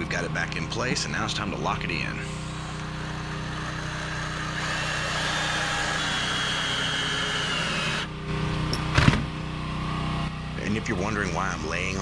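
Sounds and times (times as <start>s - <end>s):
steady low hum: 0.0s - 12.0s
power drill driving a screw: 2.5s - 8.1s.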